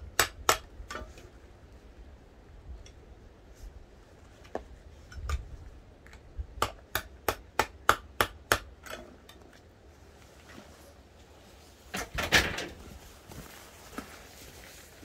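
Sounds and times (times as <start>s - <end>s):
hammer strikes: 6.6s - 9.0s.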